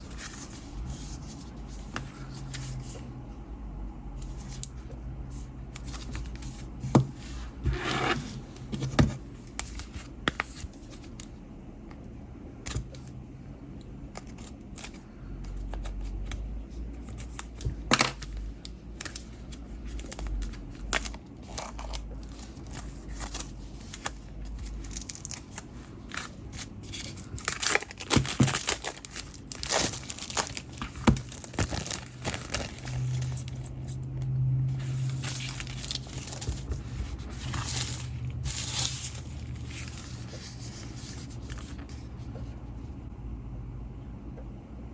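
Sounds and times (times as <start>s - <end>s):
package being unwrapped: 20.0s - 33.6s, 34.8s - 41.8s.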